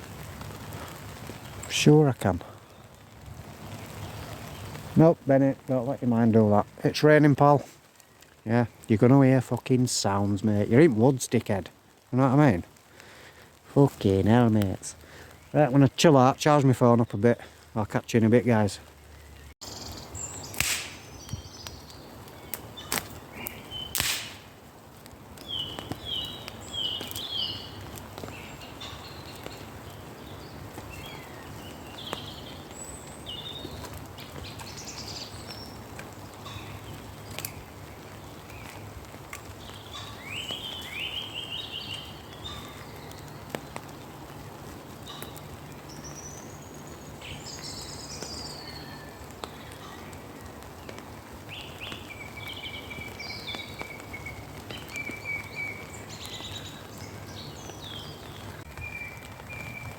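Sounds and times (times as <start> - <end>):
rain in woods: 0.0 - 59.9
birds chirping and trilling: 12.2 - 24.6, 25.3 - 44.3, 45.0 - 59.9.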